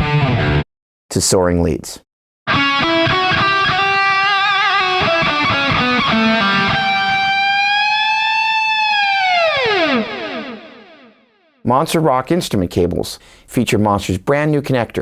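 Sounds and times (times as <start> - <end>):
distorted electric guitar lead: 0.0 - 0.6, 2.5 - 11.6.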